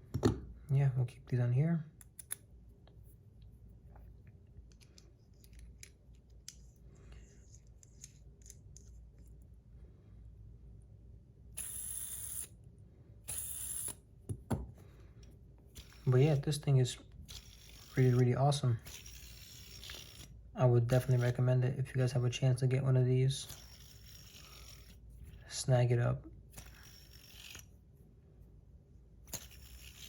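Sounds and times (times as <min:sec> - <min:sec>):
faint metal clicks and handling: 0:02.0 - 0:09.5.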